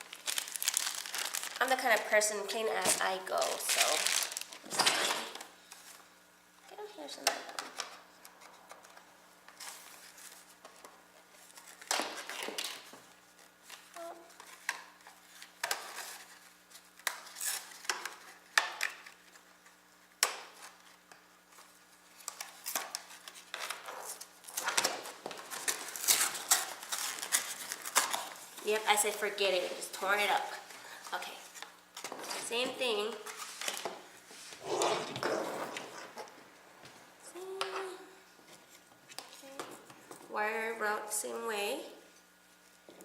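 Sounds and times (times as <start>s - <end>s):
rustling: 0.0s - 2.2s.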